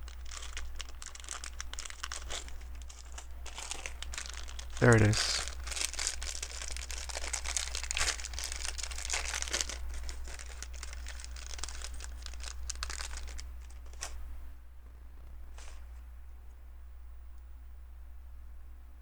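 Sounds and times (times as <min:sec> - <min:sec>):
plastic pieces clicking and rustling: 0:00.0 - 0:14.2.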